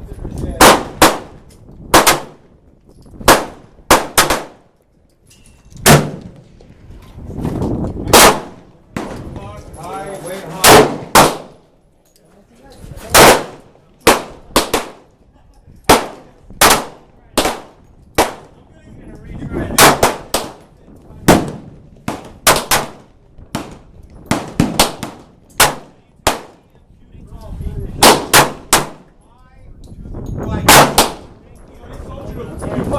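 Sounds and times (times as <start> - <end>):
gunshots: 0.5 - 1.3, 1.9 - 2.4, 3.2 - 4.6, 5.8 - 6.4, 8.1 - 9.2, 10.5 - 11.6, 13.1 - 15.1, 15.9 - 18.5, 19.7 - 20.6, 21.2 - 26.6, 28.0 - 29.1, 30.6 - 31.3.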